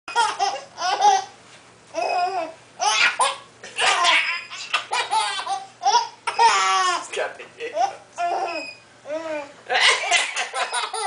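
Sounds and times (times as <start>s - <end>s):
child giggling: 3.8s - 7.0s, 7.7s - 11.0s.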